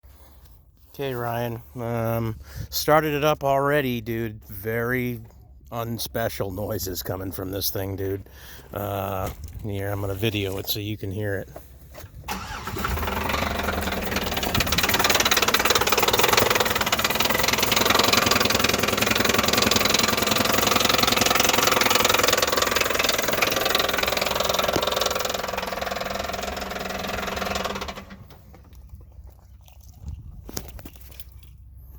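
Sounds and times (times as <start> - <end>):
car engine knocking clatter: 12.3 - 28.7.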